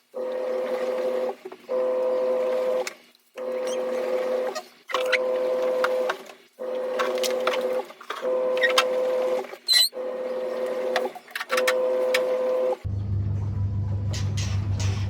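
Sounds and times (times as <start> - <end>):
short high squeak: 9.7 - 10.0.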